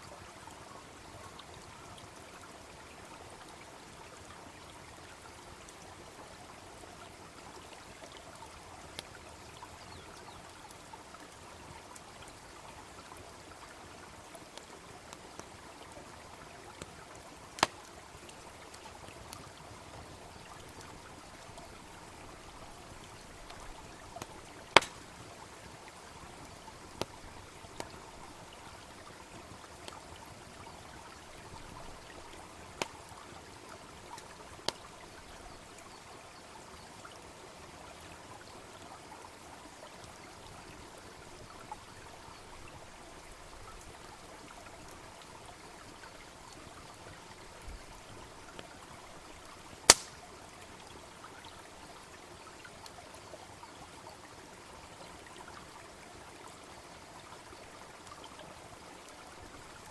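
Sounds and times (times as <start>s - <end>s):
babbling brook: 0.0s - 59.9s
wood fire crackling and popping: 17.6s - 17.8s, 24.2s - 25.2s, 49.9s - 50.2s.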